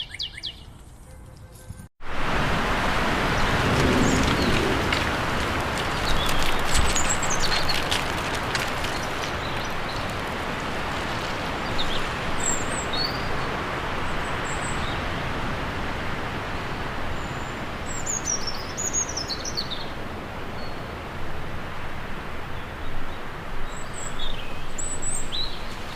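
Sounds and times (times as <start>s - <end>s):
small birds chirping: 0.0s - 0.9s, 3.4s - 13.5s, 17.2s - 20.0s.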